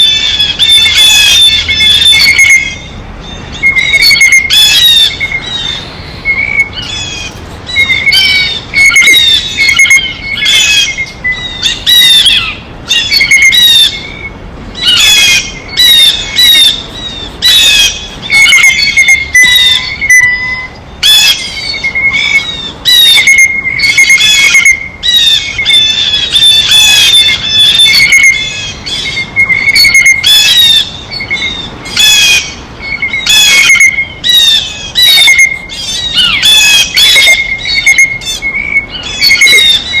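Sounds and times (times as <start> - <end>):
blue jays squawking: 0.0 - 40.0.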